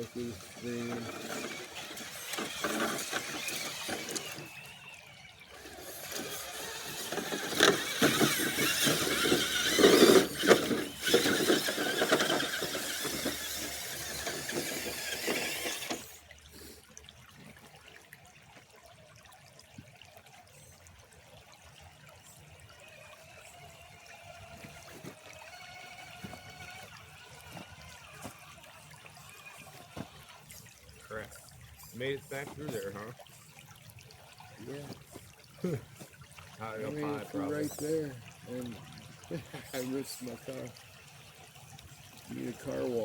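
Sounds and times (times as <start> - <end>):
electric motor and gears whining: 0.0 - 16.2, 22.8 - 30.6
water splashing: 0.0 - 43.0.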